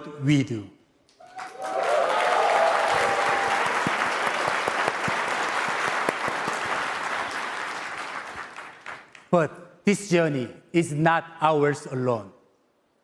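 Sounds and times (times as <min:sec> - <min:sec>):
audience applauding: 0:01.2 - 0:09.2.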